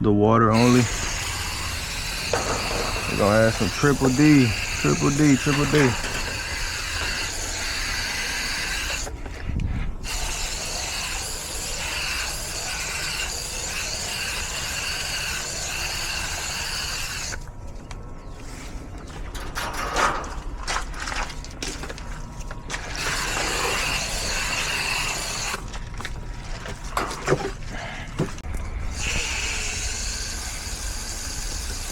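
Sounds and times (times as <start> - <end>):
sprayer hissing: 0.5 - 9.2, 10.0 - 17.4, 22.8 - 25.6, 28.9 - 31.9.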